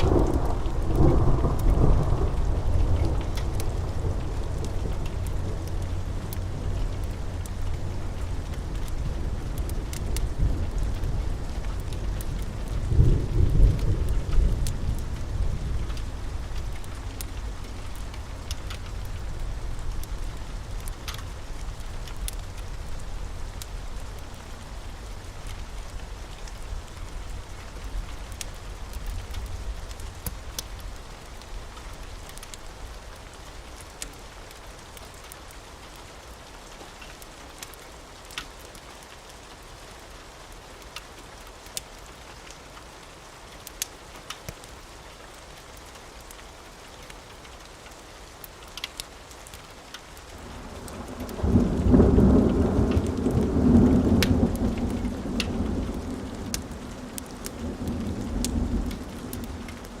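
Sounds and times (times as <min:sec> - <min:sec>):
steady rain: 0:00.0 - 1:00.0
rolling thunder: 0:09.9 - 0:16.9, 0:50.5 - 1:00.0.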